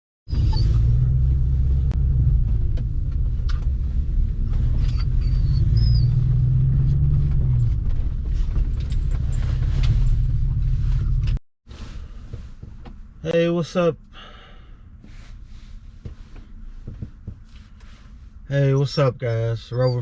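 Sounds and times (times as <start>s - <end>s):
loud low rumble: 0.3s - 11.4s.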